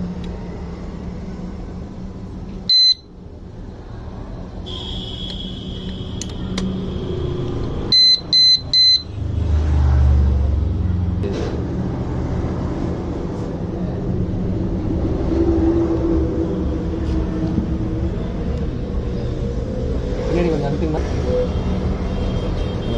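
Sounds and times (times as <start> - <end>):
alarm beeper chirps: 2.7 - 3.1, 4.7 - 6.4, 7.9 - 9.1
vehicle engine rumble: 5.4 - 22.1.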